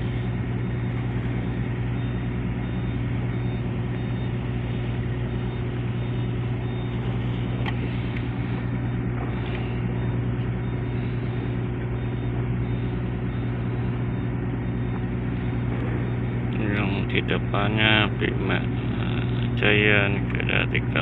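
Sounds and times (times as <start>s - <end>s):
large engine droning: 0.0s - 21.0s.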